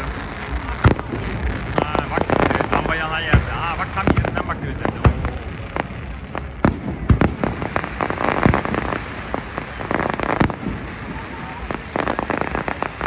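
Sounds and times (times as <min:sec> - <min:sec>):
fireworks bangs and crackle: 0:00.0 - 0:13.0
loud firework booms: 0:00.0 - 0:13.0.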